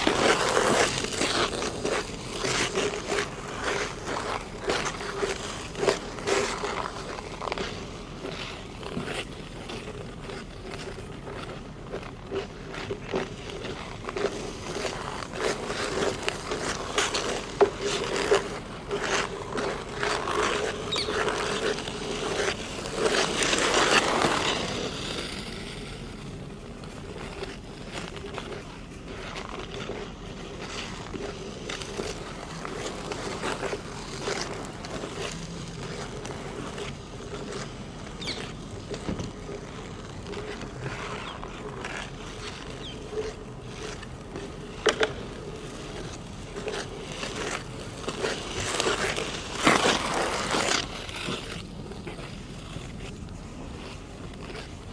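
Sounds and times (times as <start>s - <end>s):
ice skates scraping on ice: 0.0s - 54.9s.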